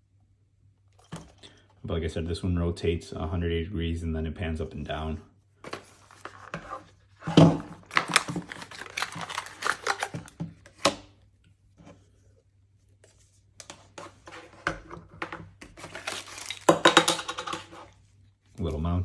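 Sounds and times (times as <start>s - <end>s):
packaging rustling and clicking: 5.7s - 11.2s, 13.6s - 17.9s.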